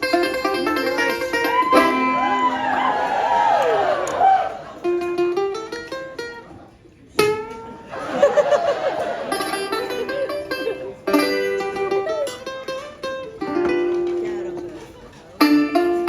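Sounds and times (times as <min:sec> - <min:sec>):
plucked string strums: 0:00.0 - 0:02.5, 0:09.3 - 0:16.0.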